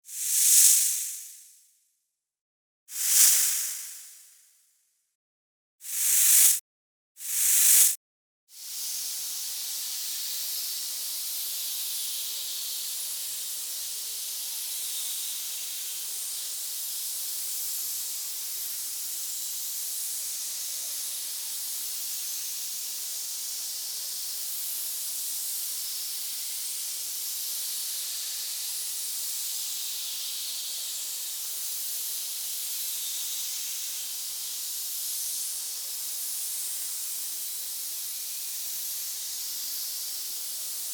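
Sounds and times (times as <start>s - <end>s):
snake hissing: 0.1s - 1.0s, 2.9s - 4.2s, 5.8s - 6.6s, 7.2s - 8.0s.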